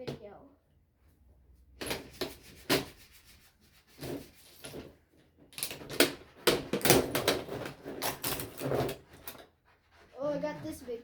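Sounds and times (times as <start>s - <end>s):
plastic parts scraping and clicking: 5.5s - 9.6s.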